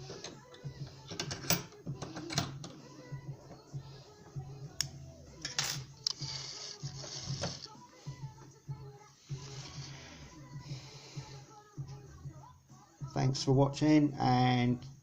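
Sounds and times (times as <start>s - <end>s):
metal scrape: 5.5s - 7.8s.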